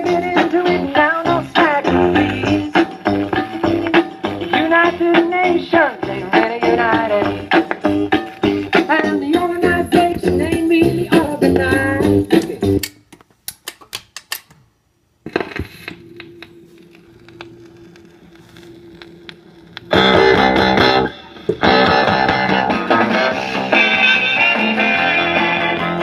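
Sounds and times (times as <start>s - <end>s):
guitar song: 0.0s - 12.8s, 19.8s - 26.0s
music from record player: 0.0s - 12.9s, 15.3s - 26.0s.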